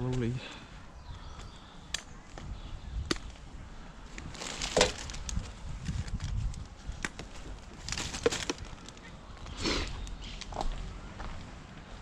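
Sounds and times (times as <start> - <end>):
rustling crackle: 4.1 - 10.2.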